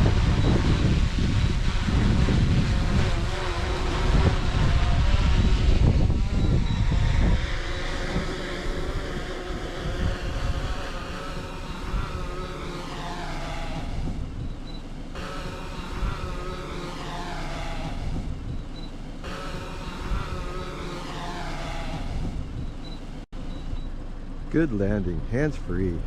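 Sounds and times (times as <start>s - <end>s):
wind buffeting microphone: 0.0s - 12.6s, 13.4s - 14.8s, 17.7s - 19.0s, 21.9s - 22.9s
drone propellers whining: 0.0s - 26.0s.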